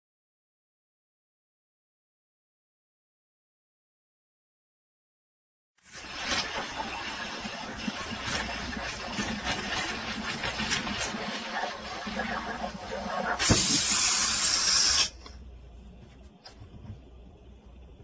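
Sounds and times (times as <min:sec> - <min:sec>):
steam wand hissing and sputtering: 0:06.0 - 0:15.2.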